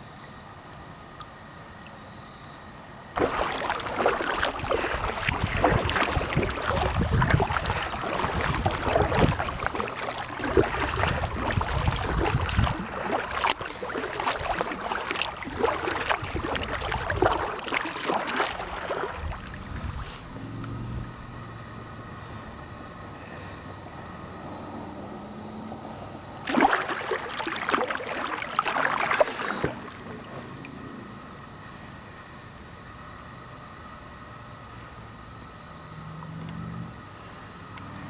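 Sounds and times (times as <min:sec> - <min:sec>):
water splashing around kayak: 0:03.2 - 0:21.2, 0:26.4 - 0:31.2.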